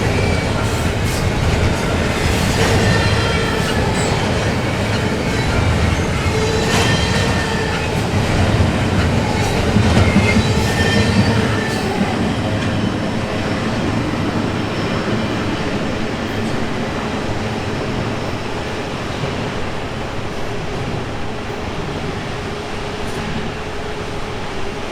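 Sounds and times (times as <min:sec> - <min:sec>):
train wheel clatter: 0:00.0 - 0:15.6
freight train rumbling: 0:00.0 - 0:24.9.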